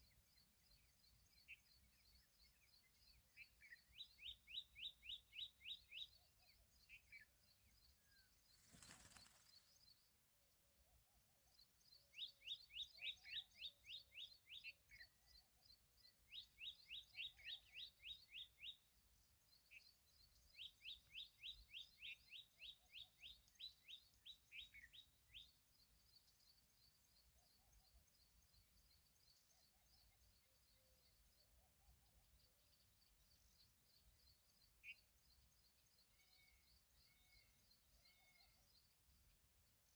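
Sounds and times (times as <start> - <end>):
small bird chirping: 8.2 - 9.8.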